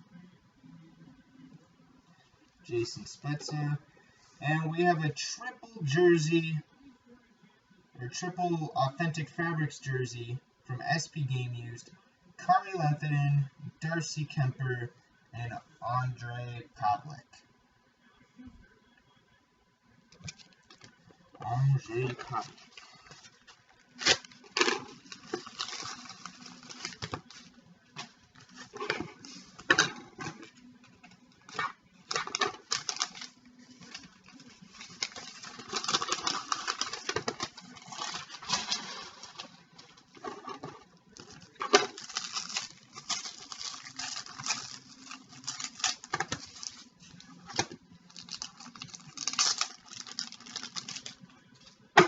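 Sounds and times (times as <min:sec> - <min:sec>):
card wrappers crinkling: 0:20.2 - 0:51.7.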